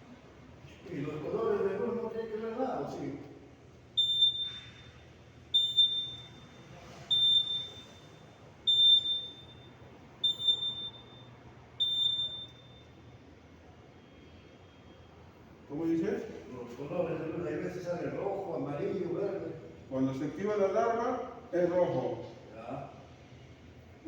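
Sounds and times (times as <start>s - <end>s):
fire alarm panel beeping: 4.0s - 13.0s.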